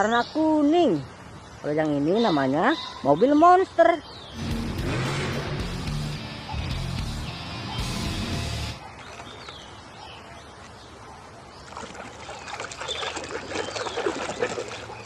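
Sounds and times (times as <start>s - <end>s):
water sloshing and splashing: 8.8s - 15.0s.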